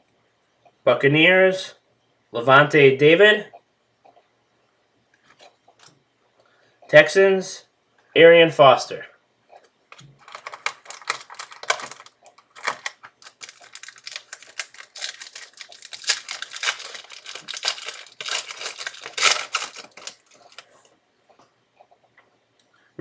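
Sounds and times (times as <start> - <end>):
trading cards rustling and flicking: 9.9 - 20.8.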